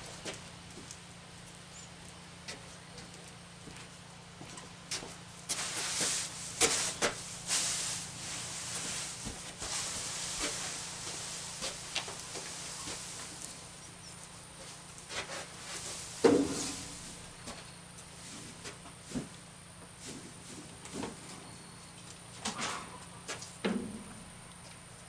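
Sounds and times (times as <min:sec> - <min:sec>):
dry hay rustling and scraping: 0:05.2 - 0:21.2.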